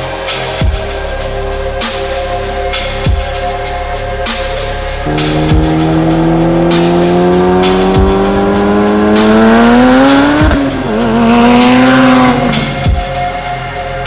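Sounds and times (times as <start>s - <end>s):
music with steady beat: 0.0s - 14.0s
car engine revving: 5.0s - 13.2s.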